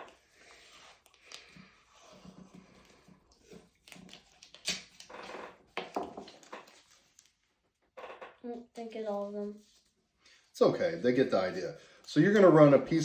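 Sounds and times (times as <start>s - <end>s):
tape rustling and clicking: 0.0s - 8.4s
tape ripping: 3.7s - 7.3s.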